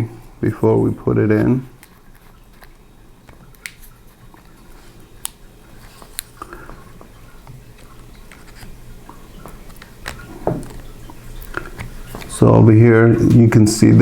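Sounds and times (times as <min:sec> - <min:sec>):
light handling noises: 0:01.3 - 0:12.5.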